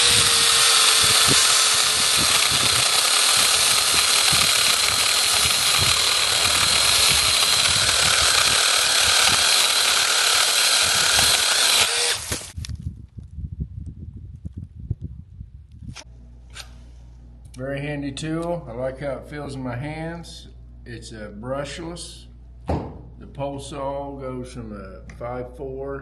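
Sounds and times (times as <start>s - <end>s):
mini chainsaw cutting tree limb: 0.0s - 12.6s.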